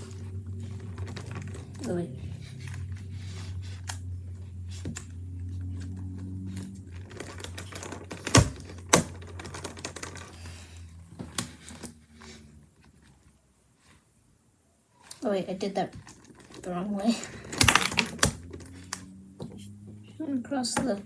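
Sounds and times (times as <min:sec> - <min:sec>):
low steady hum: 0:00.0 - 0:21.0
sharp plastic snaps: 0:17.4 - 0:19.1.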